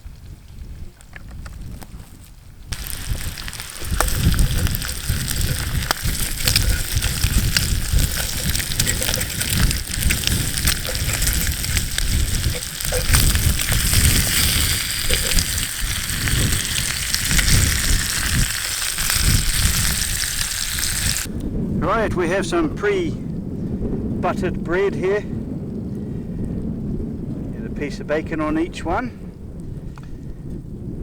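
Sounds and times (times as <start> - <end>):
wind on microphone: 0.0 - 31.0
bacon sizzling in a pan: 2.7 - 21.3.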